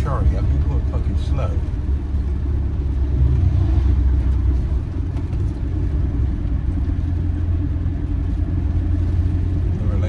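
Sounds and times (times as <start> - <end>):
engine and road rumble: 0.0 - 10.0.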